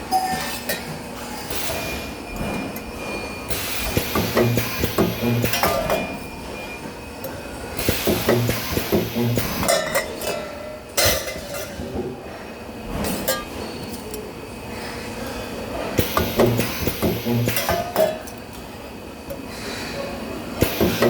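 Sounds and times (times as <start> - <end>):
electrical buzzes of spot welder: 3.5 - 6.0, 7.8 - 9.7, 16.0 - 17.9.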